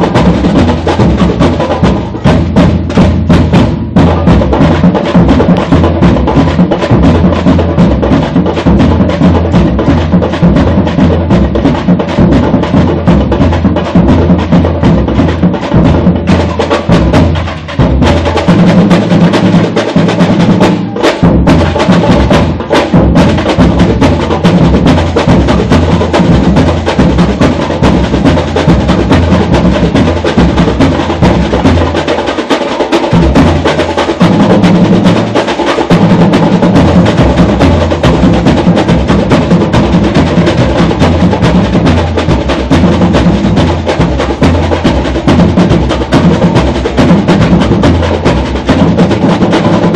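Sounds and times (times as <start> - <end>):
deep bass drums: 0.0 - 32.0
snare drums and hand percussion: 0.0 - 49.9.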